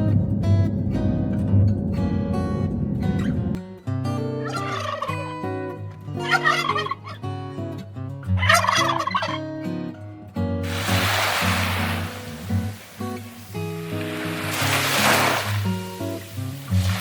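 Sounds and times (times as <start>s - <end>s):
background music: 0.0s - 17.0s
bird rippling call: 4.5s - 5.2s.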